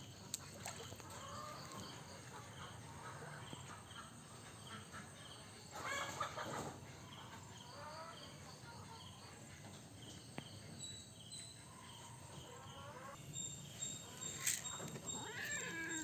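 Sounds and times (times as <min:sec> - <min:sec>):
faint regular chirps: 0:13.2 - 0:16.0
animal call: 0:14.1 - 0:16.0.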